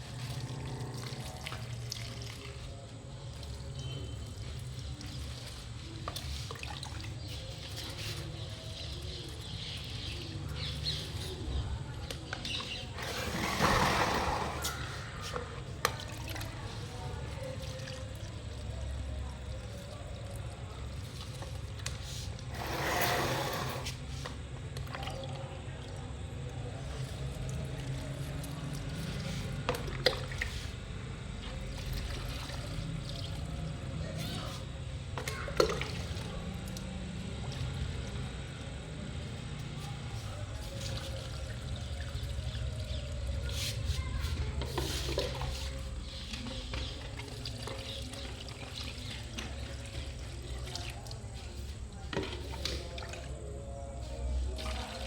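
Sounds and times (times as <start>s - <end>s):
rush of pouring water: 0.0s - 8.4s, 12.7s - 24.1s
water trickling and dripping: 0.0s - 13.2s, 14.6s - 22.7s, 24.2s - 55.0s.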